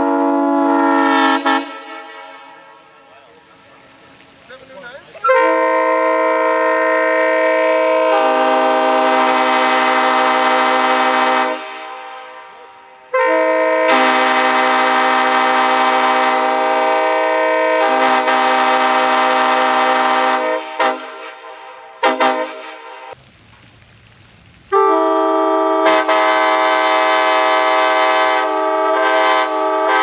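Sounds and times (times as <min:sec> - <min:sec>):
train air horn blasts: 0:00.0 - 0:03.1, 0:05.2 - 0:23.2, 0:24.7 - 0:30.0.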